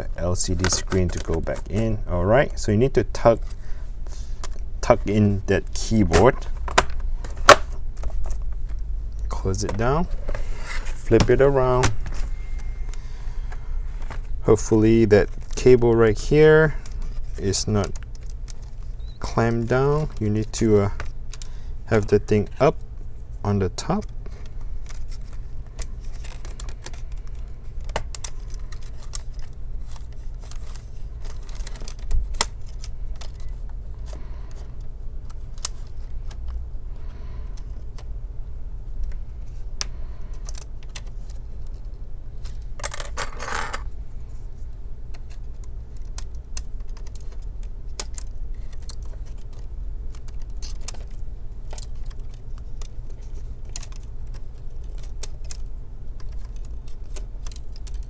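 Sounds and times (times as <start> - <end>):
steady low hum: 0.0 - 58.0
plastic parts clicking: 0.3 - 2.0, 5.6 - 14.4, 24.0 - 38.2, 45.0 - 58.0.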